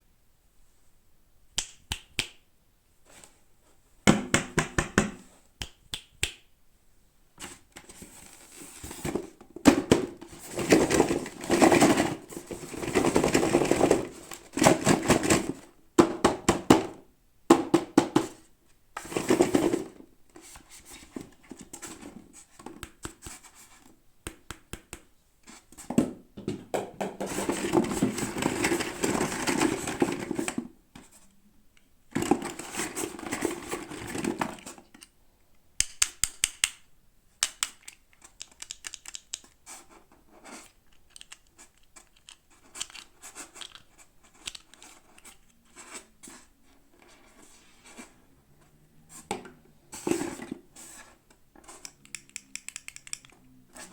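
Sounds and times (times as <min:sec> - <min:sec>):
sharp clicks and taps: 0:01.6 - 0:02.4, 0:04.1 - 0:06.5, 0:24.2 - 0:25.1, 0:35.8 - 0:39.6, 0:51.8 - 0:53.4
plastic and cardboard rustling: 0:07.4 - 0:17.0, 0:17.6 - 0:24.0, 0:25.4 - 0:31.3, 0:32.1 - 0:35.0, 0:39.5 - 0:52.1.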